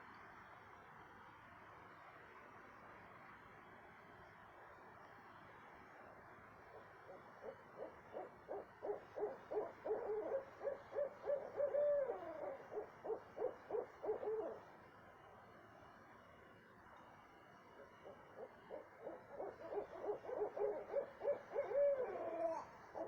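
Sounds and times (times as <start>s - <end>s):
owl hooting: 7.0s - 14.7s, 17.8s - 23.0s
owl wavering call: 7.0s - 14.7s, 17.8s - 23.0s.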